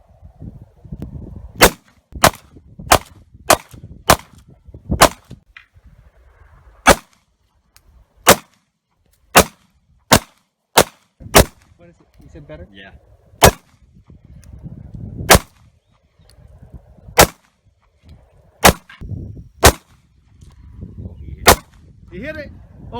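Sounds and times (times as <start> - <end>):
pistol shots: 1.6 - 4.4, 5.0 - 5.3, 6.9 - 7.2, 8.3 - 8.6, 9.3 - 11.6, 13.4 - 13.7, 15.3 - 15.6, 17.2 - 17.5, 18.6 - 18.9, 19.6 - 19.9, 21.5 - 21.8.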